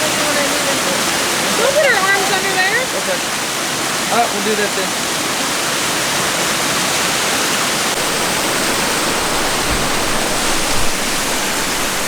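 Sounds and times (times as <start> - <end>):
rush of falling water: 0.0 - 12.0
faint low bumps: 8.0 - 12.0.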